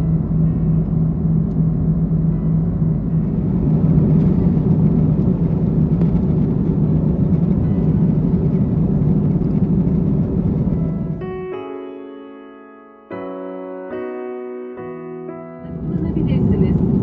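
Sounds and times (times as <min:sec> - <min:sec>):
airliner cabin drone: 0:00.0 - 0:11.4, 0:15.6 - 0:17.0.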